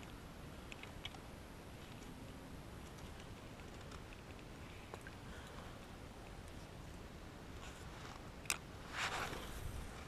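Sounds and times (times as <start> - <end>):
faint outdoor hiss: 0.0 - 10.0.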